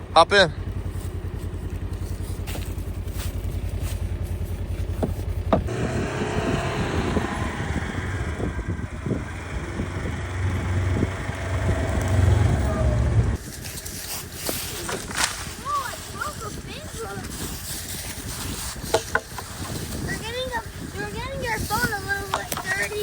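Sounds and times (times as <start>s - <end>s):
farm vehicle engine running: 0.0s - 23.0s
rattling and knocking: 0.6s - 6.0s, 13.4s - 23.0s.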